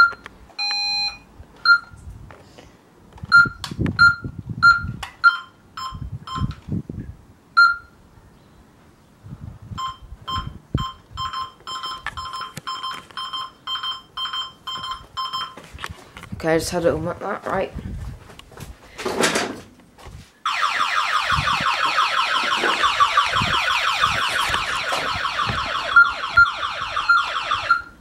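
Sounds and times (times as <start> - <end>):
alarm keypad beeping: 0.0 - 2.0, 3.3 - 6.5, 7.6 - 7.9, 9.8 - 15.6, 20.5 - 28.0.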